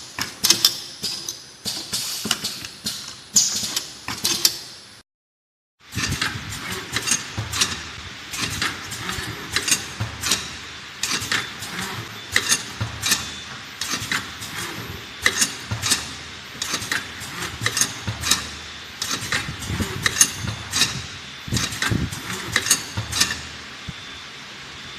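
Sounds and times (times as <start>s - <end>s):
capping machine humming: 5.8s - 24.9s
faint high machine whine: 5.8s - 24.9s.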